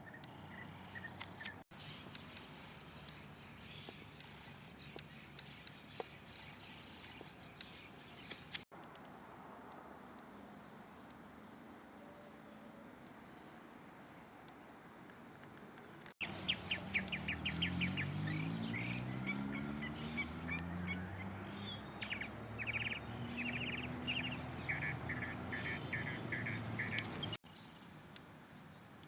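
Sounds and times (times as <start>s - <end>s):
songbirds chipping and trilling: 0.0s - 8.6s, 15.8s - 27.8s.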